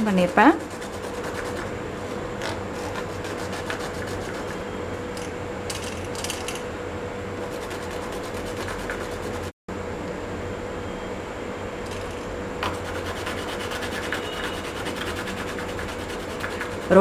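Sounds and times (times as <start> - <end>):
herb scraping on grinding stone: 0.0 - 4.6, 7.4 - 9.5, 12.6 - 17.0
steady hum: 0.0 - 17.0.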